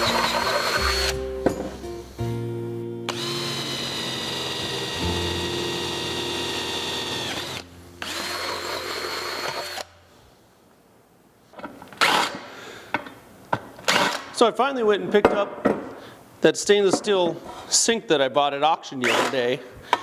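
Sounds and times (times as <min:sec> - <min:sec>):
electric drill whining: 0:00.0 - 0:01.2, 0:03.1 - 0:10.0.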